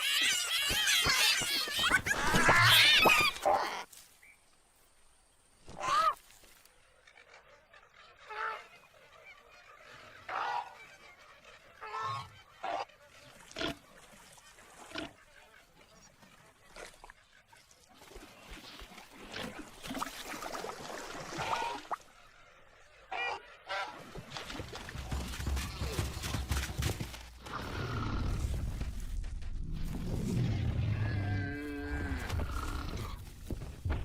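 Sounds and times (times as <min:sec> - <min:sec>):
cartoon animal calls: 0:00.0 - 0:03.8.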